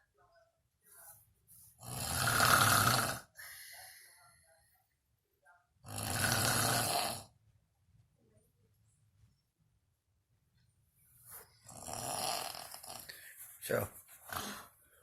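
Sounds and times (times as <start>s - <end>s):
person snoring: 1.8s - 3.4s, 5.8s - 7.3s, 11.7s - 13.2s, 14.3s - 14.7s.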